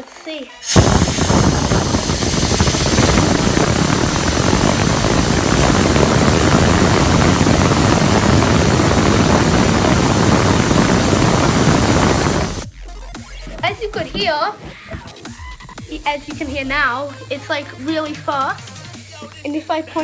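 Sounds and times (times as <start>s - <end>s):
rush of blown air: 0.6s - 12.7s.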